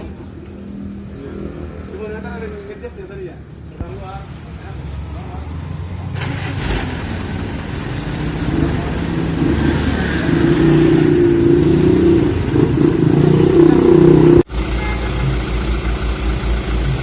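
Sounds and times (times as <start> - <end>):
vehicle engine running: 7.1 - 17.0.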